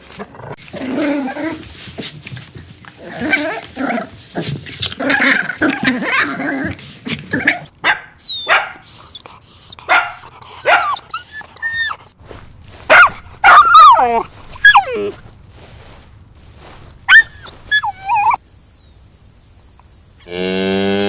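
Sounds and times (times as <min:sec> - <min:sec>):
dog yipping and whining: 0:05.0 - 0:15.2, 0:16.5 - 0:18.4
dog barking: 0:07.8 - 0:08.8, 0:09.9 - 0:11.0, 0:12.9 - 0:15.2, 0:17.1 - 0:18.4.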